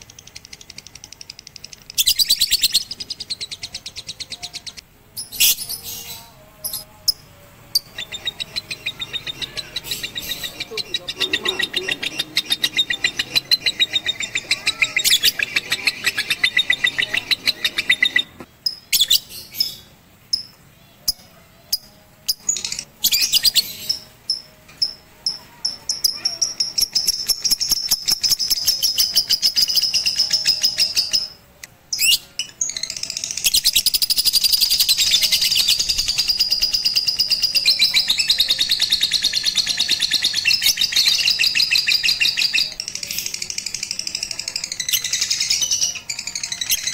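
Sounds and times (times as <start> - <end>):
lovebird chattering: 7.8 - 18.4.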